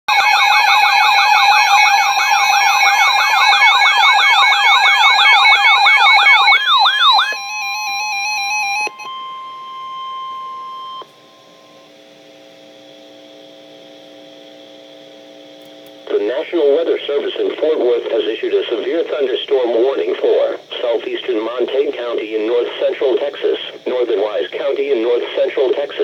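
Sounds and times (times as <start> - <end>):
electronic yelp siren: 0.1 - 11.9
steady electronic tones: 0.1 - 13.0.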